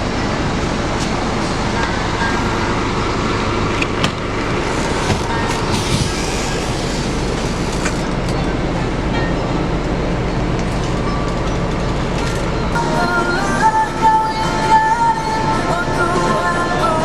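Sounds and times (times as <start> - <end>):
coach engine and road rumble: 0.0 - 17.0
short rattles: 4.5 - 8.1.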